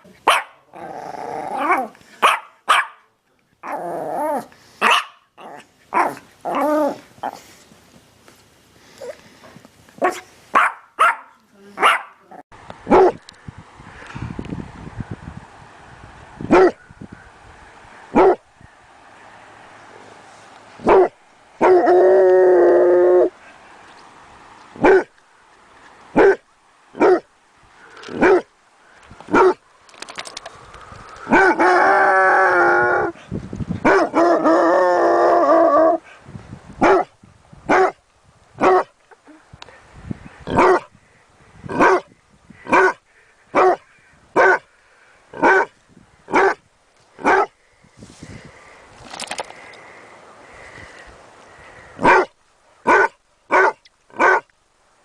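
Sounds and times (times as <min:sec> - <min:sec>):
dog barking: 0:00.2 - 0:00.6, 0:01.7 - 0:03.1, 0:04.8 - 0:05.2, 0:10.0 - 0:12.2, 0:12.9 - 0:13.2, 0:16.5 - 0:16.8, 0:18.2 - 0:18.4, 0:20.8 - 0:21.8, 0:24.8 - 0:25.1, 0:26.2 - 0:26.4, 0:27.0 - 0:27.3, 0:28.2 - 0:28.5, 0:29.3 - 0:29.6, 0:33.9 - 0:34.2, 0:36.8 - 0:37.1, 0:37.7 - 0:38.0, 0:38.6 - 0:38.9, 0:40.5 - 0:40.9, 0:41.8 - 0:42.0, 0:42.7 - 0:43.0, 0:43.6 - 0:43.8, 0:44.4 - 0:44.6, 0:45.4 - 0:45.7, 0:46.3 - 0:46.6, 0:47.2 - 0:47.5, 0:52.0 - 0:52.3, 0:52.9 - 0:54.5.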